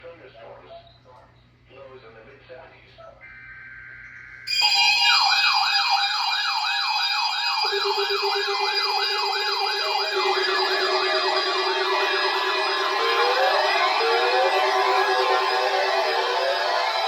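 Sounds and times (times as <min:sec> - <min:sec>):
electronic siren yelping: 0:03.3 - 0:17.0.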